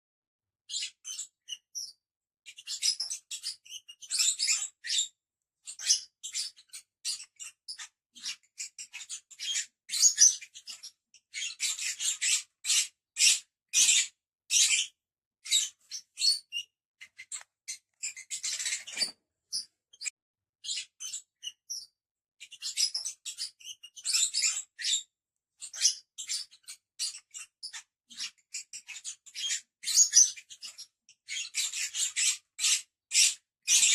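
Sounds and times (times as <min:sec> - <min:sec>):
lovebirds chirping: 0:15.5 - 0:21.9.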